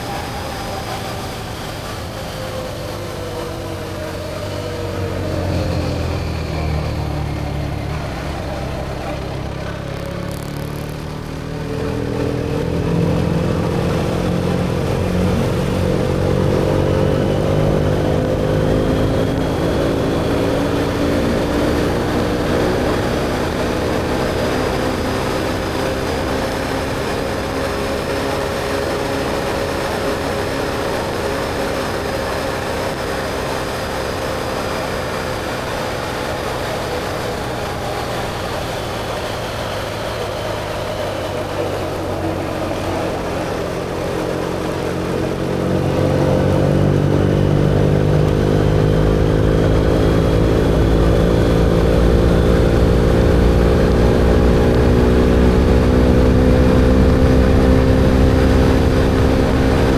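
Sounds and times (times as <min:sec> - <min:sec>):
motorcycle engine: 0:00.0 - 0:59.9
wind and road rush: 0:00.0 - 0:59.9.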